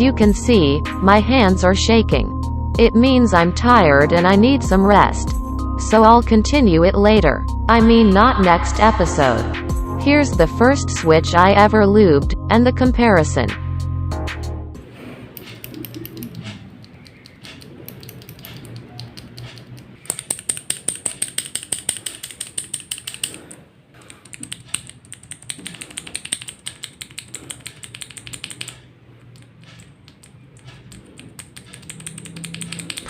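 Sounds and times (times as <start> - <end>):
mechanical keyboard clicks: 15.4 - 33.0.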